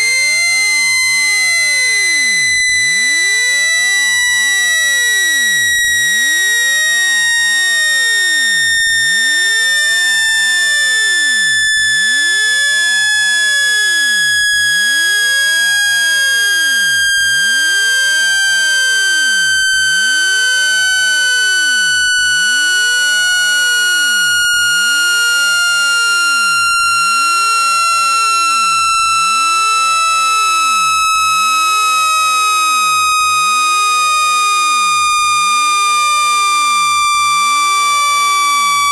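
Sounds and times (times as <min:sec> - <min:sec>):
electronic tone sliding down in pitch: 0:15.2 - 0:31.6.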